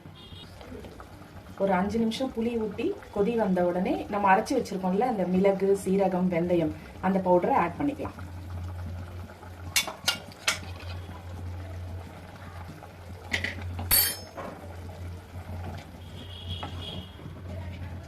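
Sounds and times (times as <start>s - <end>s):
metal utensil clinking on pot: 9.8s - 10.9s, 13.3s - 14.4s.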